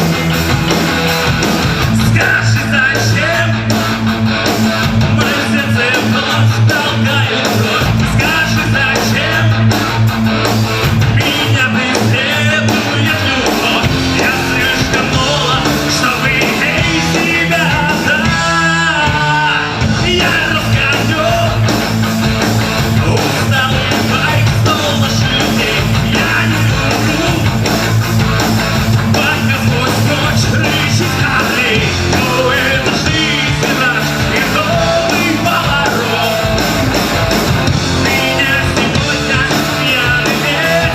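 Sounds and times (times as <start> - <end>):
guitar: 0.0 - 40.9
rock band playing live: 0.0 - 40.9
person singing: 5.1 - 9.7, 11.0 - 21.7, 22.9 - 27.7, 29.1 - 36.8, 37.9 - 40.9.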